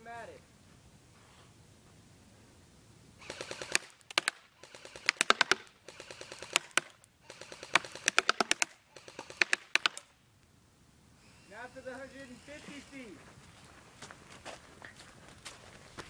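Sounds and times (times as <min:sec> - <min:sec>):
airsoft gun firing bursts: 0:03.2 - 0:10.2.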